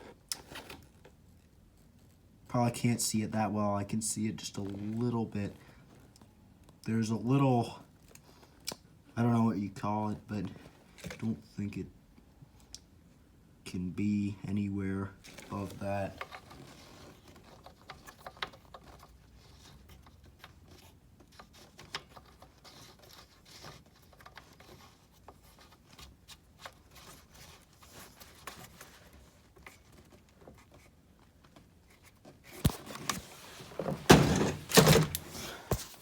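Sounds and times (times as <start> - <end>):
knocks and scrapes: 15.2 - 36.0
plastic clicks and rubbing: 15.3 - 36.0.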